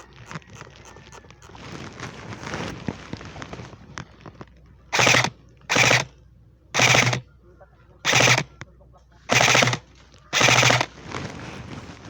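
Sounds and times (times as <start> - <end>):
scuffing and rustling movement: 0.8 - 4.4, 10.9 - 12.0
airsoft rifle full-auto burst: 4.9 - 6.1, 6.8 - 7.2, 8.0 - 8.6, 9.3 - 11.0.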